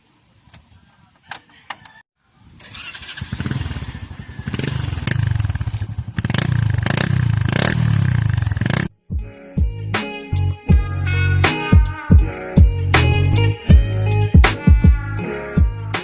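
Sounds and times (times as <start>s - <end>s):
motorcycle engine revving: 2.6s - 9.0s
guitar music: 9.0s - 16.0s.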